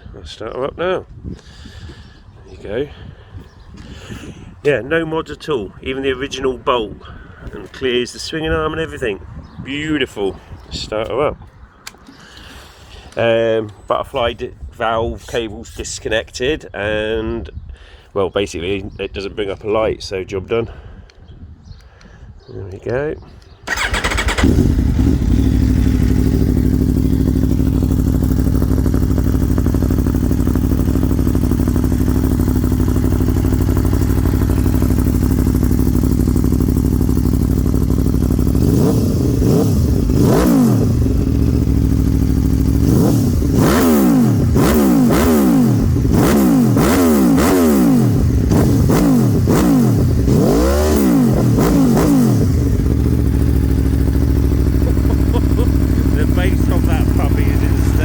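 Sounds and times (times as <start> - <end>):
motorcycle engine idling and revving: 23.6 - 58.0.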